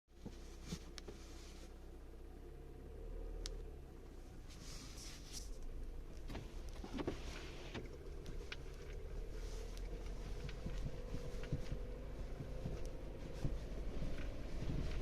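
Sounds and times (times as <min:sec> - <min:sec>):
car engine rumbling: 0:00.1 - 0:15.0
light knocks and clicks: 0:09.8 - 0:15.0.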